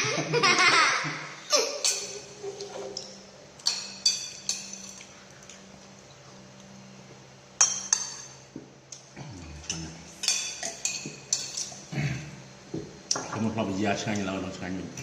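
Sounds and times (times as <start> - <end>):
dishes and utensils clinking: 1.8 - 5.1, 7.6 - 8.4, 9.6 - 11.9.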